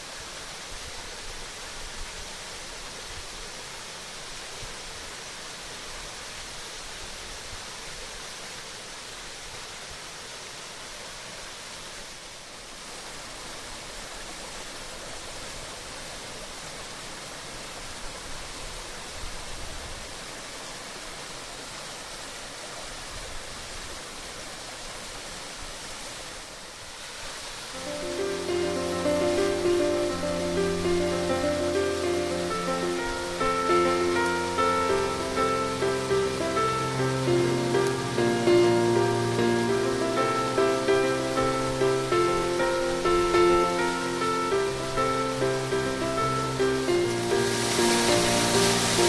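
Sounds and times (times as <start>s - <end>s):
waterfall rushing: 0.0s - 49.0s
music with held notes: 27.8s - 49.0s.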